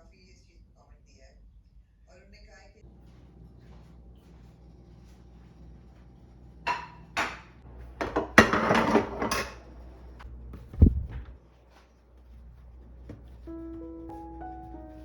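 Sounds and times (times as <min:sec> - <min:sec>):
dishes and utensils clattering: 0:06.7 - 0:09.8.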